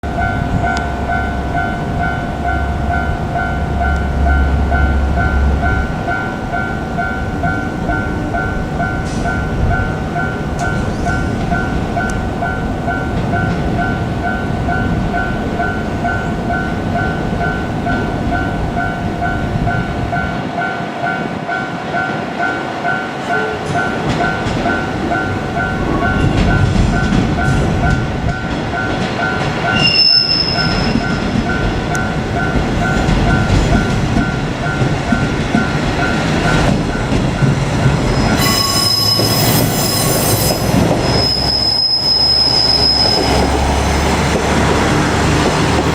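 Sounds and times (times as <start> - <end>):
diesel railcar rumbling past: 0.0 - 45.9
level-crossing warning bell: 0.0 - 45.9
train wheels squealing: 10.6 - 11.7, 29.3 - 31.5, 37.8 - 45.9.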